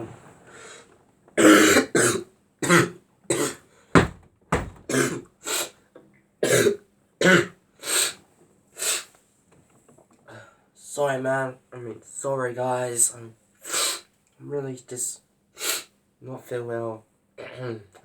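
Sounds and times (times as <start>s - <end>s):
person coughing: 1.4s - 3.6s, 4.8s - 5.2s, 6.4s - 7.5s.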